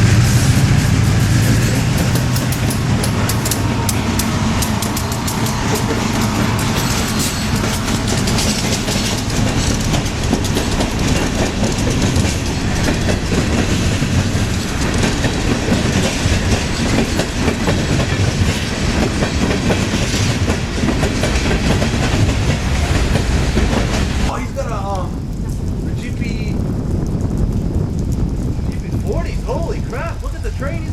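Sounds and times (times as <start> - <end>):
train rolling past: 0.0 - 30.9
wheels clicking over rails: 0.7 - 24.4.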